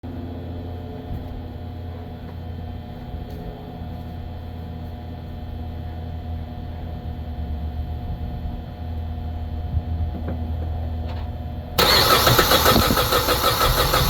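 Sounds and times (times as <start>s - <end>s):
starter motor cranking engine: 11.8s - 14.0s.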